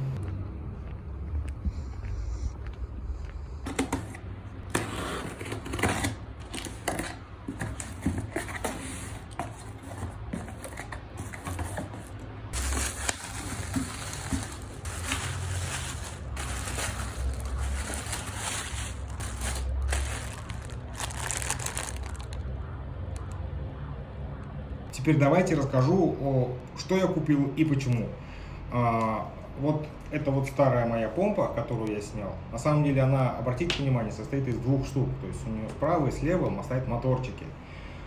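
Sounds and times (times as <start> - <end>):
packaging crinkling and tearing: 3.7 - 22.5.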